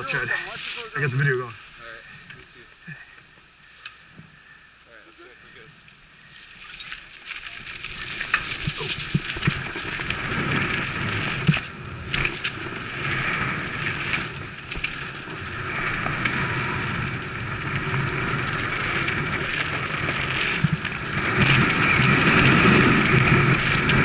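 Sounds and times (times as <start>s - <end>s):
bicycle tyres on dirt trail: 0.0s - 24.0s
bike knocking and rattling: 6.2s - 24.0s.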